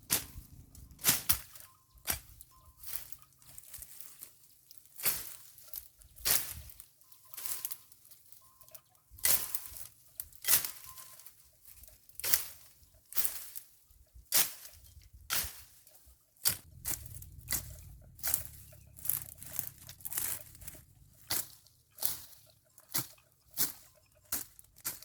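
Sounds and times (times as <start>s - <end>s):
blade cutting weeds and grass: 0.0s - 7.8s, 14.3s - 25.0s.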